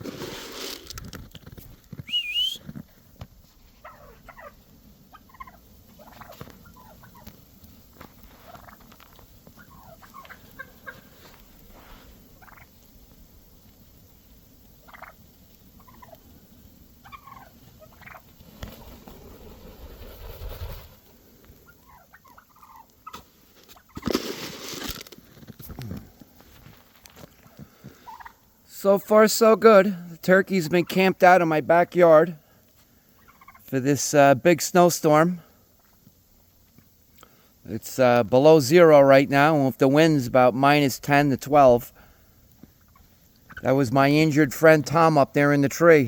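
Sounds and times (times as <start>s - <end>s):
wild turkeys calling: 1.9s - 24.1s, 27.2s - 46.0s
brief rush of noise: 18.6s - 21.1s.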